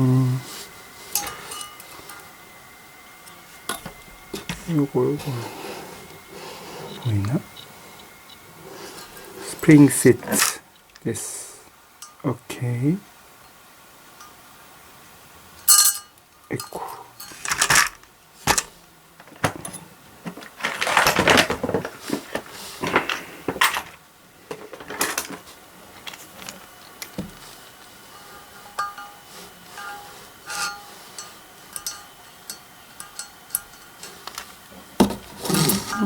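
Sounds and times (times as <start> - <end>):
rattling metal scrape: 0.4 - 2.4, 27.4 - 36.0
metal parts clicking and clinking: 1.1 - 2.4, 9.0 - 10.6, 15.6 - 21.9, 28.1 - 36.0
short ringing metal clinks: 1.2 - 2.4, 15.6 - 17.4, 28.2 - 34.2.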